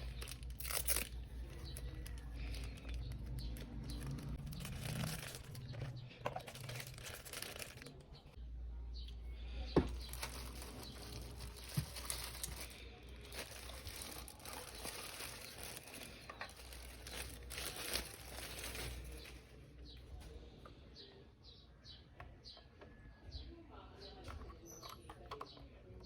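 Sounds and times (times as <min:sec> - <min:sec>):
packaging crinkling and rustling: 0:00.0 - 0:08.4, 0:09.9 - 0:19.6.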